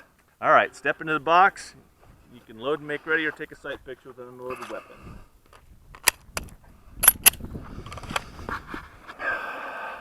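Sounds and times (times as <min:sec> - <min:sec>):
pistol metallic clicks and clacks: 0:06.0 - 0:07.4
pistol slide racking: 0:06.0 - 0:07.4.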